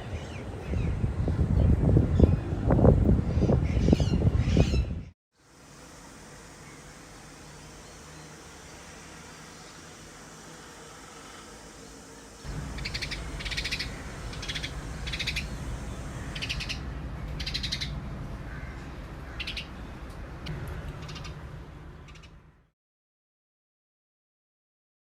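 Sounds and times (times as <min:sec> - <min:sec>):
bird rasping calls: 0:12.6 - 0:17.9.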